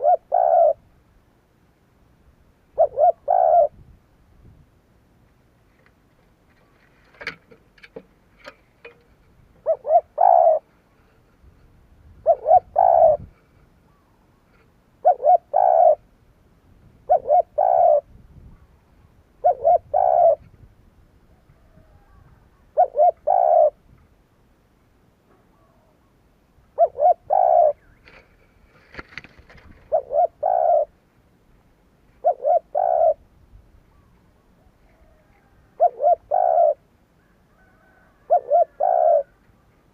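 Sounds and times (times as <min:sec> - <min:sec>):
dove cooing: 0:00.0 - 0:00.8, 0:02.7 - 0:03.8, 0:09.6 - 0:10.7, 0:12.1 - 0:14.2, 0:15.0 - 0:16.1, 0:17.0 - 0:18.7, 0:19.4 - 0:20.5, 0:21.3 - 0:23.8, 0:25.4 - 0:26.1, 0:26.7 - 0:31.0, 0:32.2 - 0:33.2, 0:33.9 - 0:39.4.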